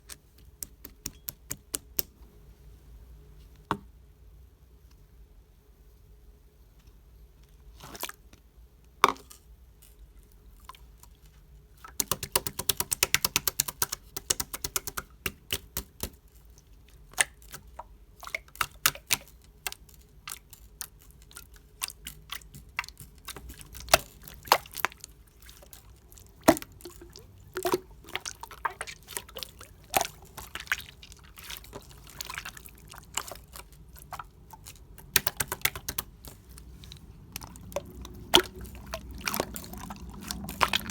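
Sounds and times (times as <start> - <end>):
slime squelching and popping: 11.8 - 40.9.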